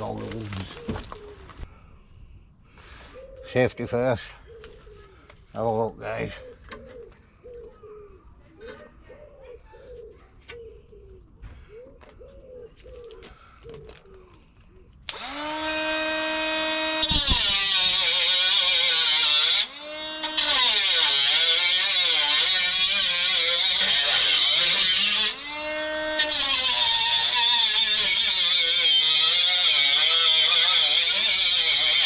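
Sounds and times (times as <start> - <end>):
angle grinder cutting sheet metal: 15.1 - 32.0.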